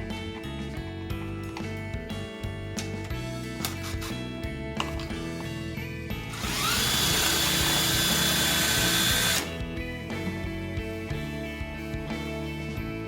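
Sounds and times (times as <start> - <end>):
background music: 0.0 - 13.0
electric drill whining: 6.3 - 9.6.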